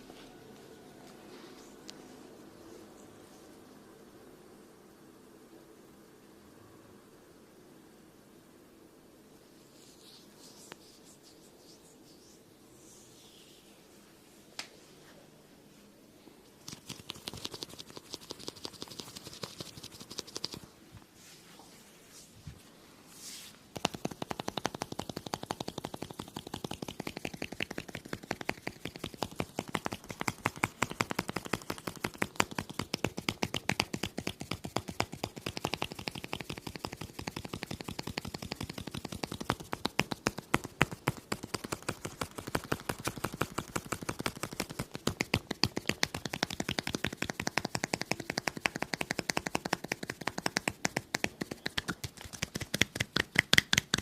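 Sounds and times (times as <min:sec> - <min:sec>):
rapid continuous clicking: 0:16.6 - 0:20.7, 0:23.8 - 0:54.0.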